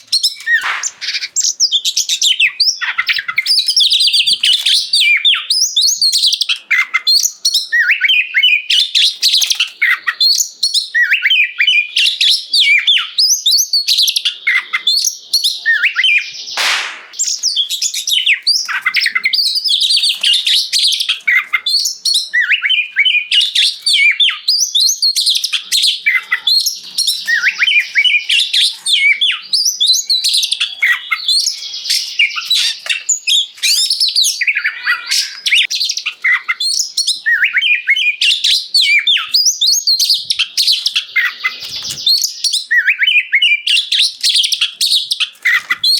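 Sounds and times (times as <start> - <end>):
magpie-robin singing: 0.0 - 16.6, 17.2 - 45.9
bird harsh rasp: 0.2 - 1.5.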